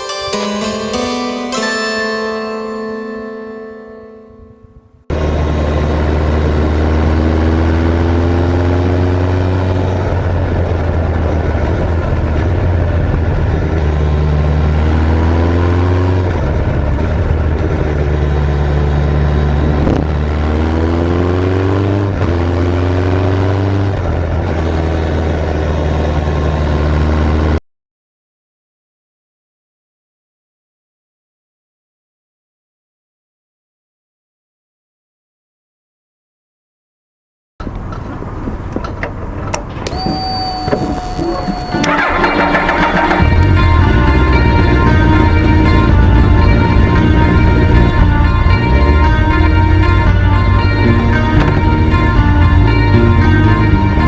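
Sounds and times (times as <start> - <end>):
motorcycle engine accelerating: 4.4 - 27.6, 38.3 - 54.0.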